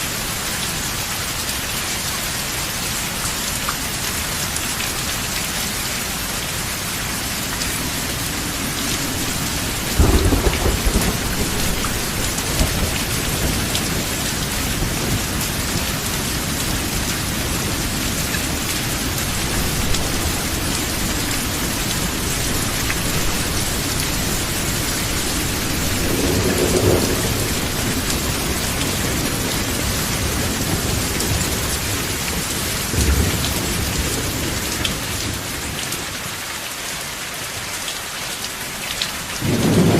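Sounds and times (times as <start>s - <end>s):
rain hissing: 3.9s - 35.8s
thunder rumbling: 7.8s - 35.4s, 39.4s - 39.9s.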